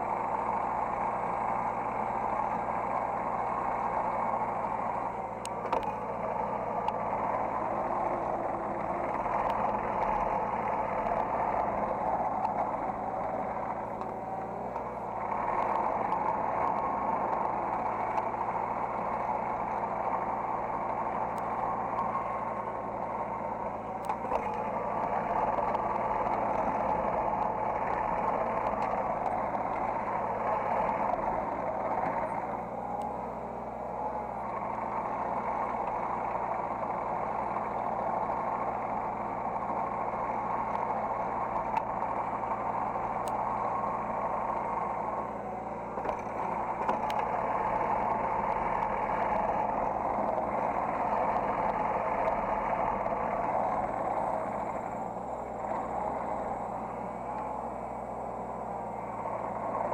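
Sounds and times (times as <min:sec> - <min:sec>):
excavator engine and hydraulics: 0:00.0 - 0:59.9
faint clicks: 0:23.6 - 0:33.4, 0:45.9 - 0:56.4.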